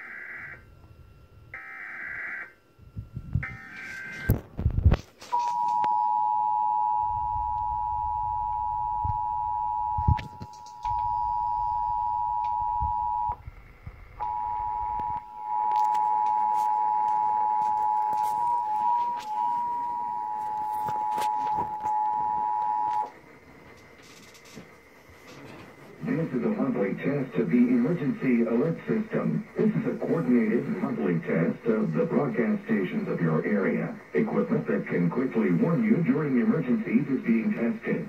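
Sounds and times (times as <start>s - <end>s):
digital data tone bursts: 3.4s - 4.4s
two-tone attention signal: 14.2s - 23.1s.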